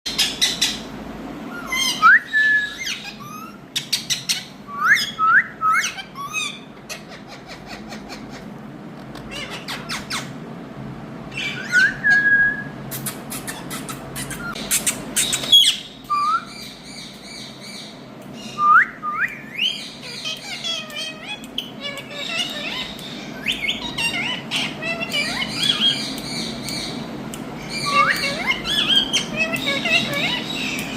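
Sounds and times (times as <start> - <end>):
parakeet squawks: 0.1 - 0.9, 1.5 - 8.5, 9.2 - 10.3, 11.3 - 12.1, 19.6 - 27.0, 27.6 - 30.9
parakeet whistles: 1.6 - 6.6, 11.3 - 12.8
parakeet clicks: 20.1 - 23.2, 25.0 - 30.9.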